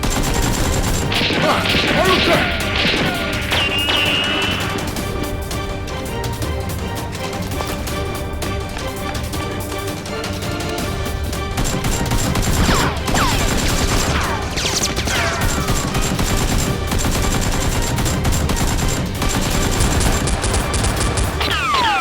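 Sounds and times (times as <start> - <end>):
machine-gun fire sound effects: 0.0 - 4.8, 11.6 - 22.0
background music: 0.0 - 22.0.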